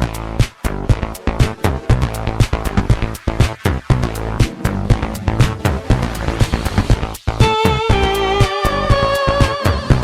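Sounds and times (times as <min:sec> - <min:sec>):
sustained synth bass and chords: 0:00.0 - 0:08.4
electronic percussion hits: 0:02.4 - 0:08.1.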